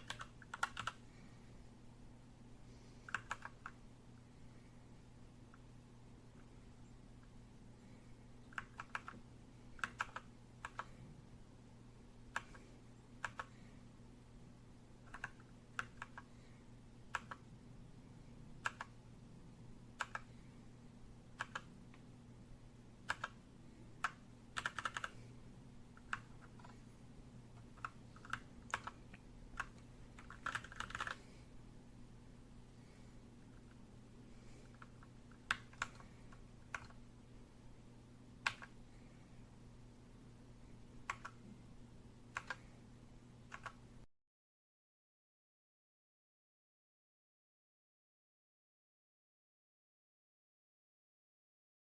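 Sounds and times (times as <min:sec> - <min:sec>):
clicky keyboard keystrokes: 0:00.0 - 0:01.0, 0:03.1 - 0:03.8, 0:08.5 - 0:09.2, 0:09.8 - 0:10.9, 0:13.2 - 0:13.6, 0:15.1 - 0:16.3, 0:17.1 - 0:17.4, 0:18.6 - 0:18.9, 0:20.0 - 0:20.3, 0:21.4 - 0:21.7, 0:23.1 - 0:23.4, 0:24.0 - 0:25.2, 0:27.7 - 0:29.0, 0:29.6 - 0:31.2, 0:34.7 - 0:37.0, 0:38.4 - 0:38.8, 0:41.1 - 0:41.4, 0:42.3 - 0:42.6, 0:43.5 - 0:43.8
faint low hum: 0:00.0 - 0:44.1.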